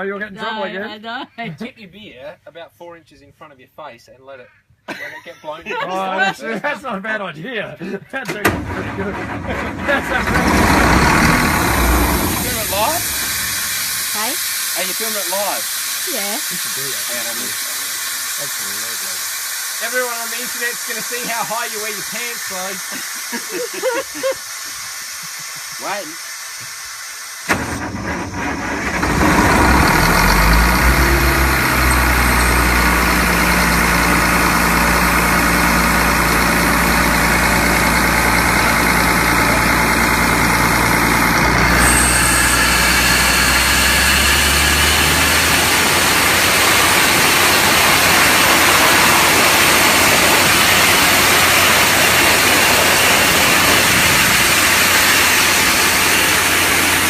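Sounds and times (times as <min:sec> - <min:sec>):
air compressor engine running: 0:08.4 - 0:57.0
hiss of rushing air: 0:10.7 - 0:28.8, 0:41.9 - 0:57.0.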